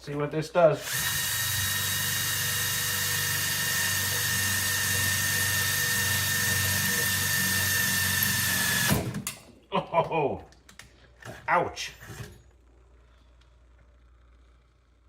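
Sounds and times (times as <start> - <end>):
electric drill running: 0.8 - 9.2.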